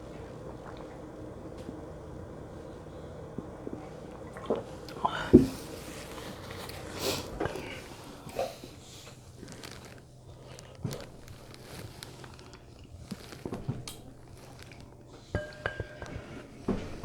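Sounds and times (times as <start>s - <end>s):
person chewing: 4.2s - 15.1s.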